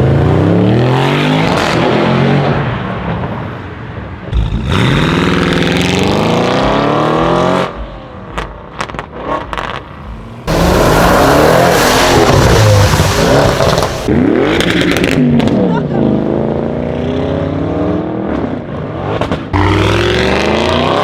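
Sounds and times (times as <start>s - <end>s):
car engine revving: 9.5s - 15.3s
exhaust pops and crackles: 10.5s - 15.6s.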